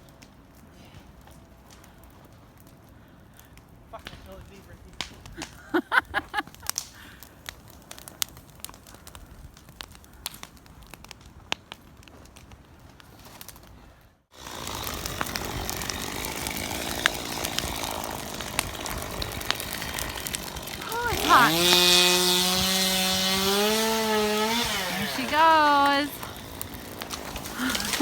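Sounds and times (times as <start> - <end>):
brush fire crackling: 0.0 - 28.0
rush of flames: 0.2 - 28.0.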